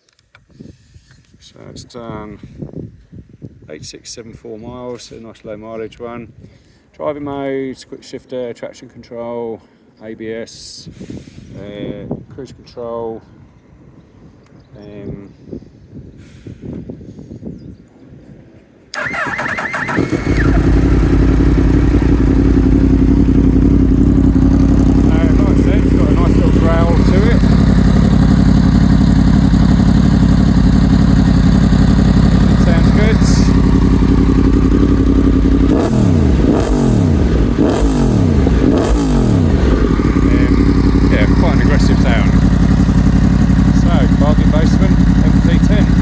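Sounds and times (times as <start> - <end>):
electric starter cranking: 19.0 - 22.3
motorcycle engine idling: 19.0 - 46.0.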